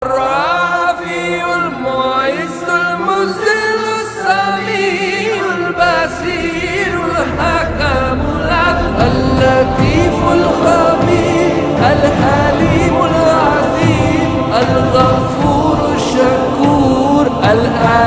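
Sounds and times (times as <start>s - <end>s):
voices singing ornamented melody: 0.0s - 18.0s
low vocal hum: 4.2s - 18.0s.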